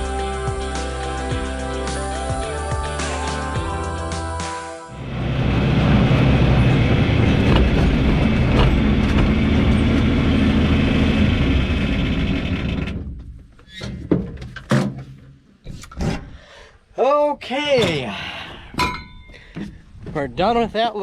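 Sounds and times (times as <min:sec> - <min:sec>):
motor running with low rumble: 0:05.0 - 0:13.1.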